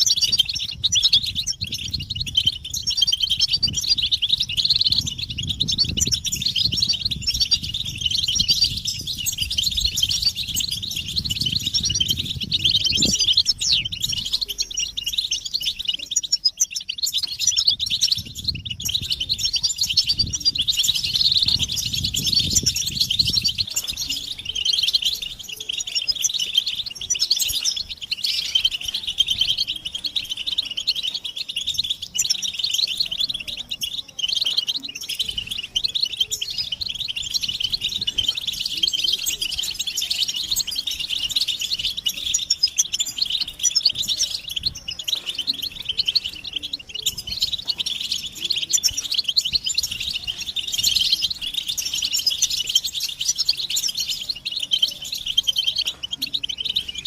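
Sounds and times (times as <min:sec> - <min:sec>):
goldfinches twittering: 0:00.0 - 0:57.0.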